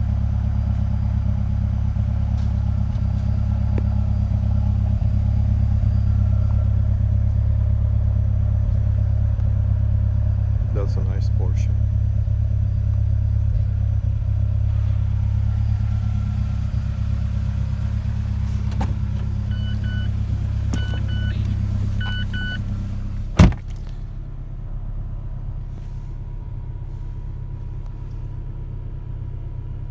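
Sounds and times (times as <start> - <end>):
car engine idling: 0.0 - 29.9
short electronic beeps: 19.4 - 22.7
sharp thump: 23.3 - 24.0.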